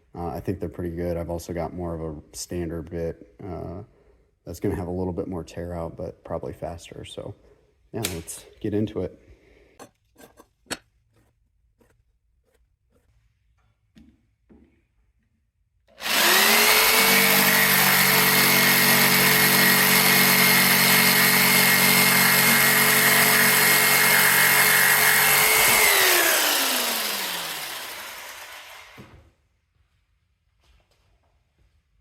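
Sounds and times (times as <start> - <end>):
jigsaw cutting wood: 15.9 - 29.1.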